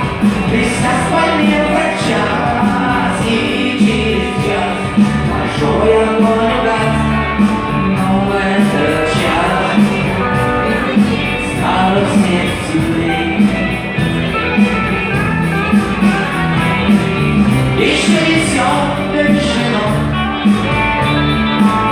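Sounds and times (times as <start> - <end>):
guitar-led rock music: 0.0 - 21.9.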